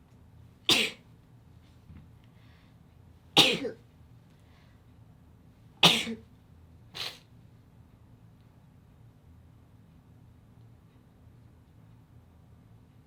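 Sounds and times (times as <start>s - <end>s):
sharp sneezes: 0.7s - 1.0s, 3.4s - 3.8s, 5.8s - 6.2s, 7.0s - 7.3s.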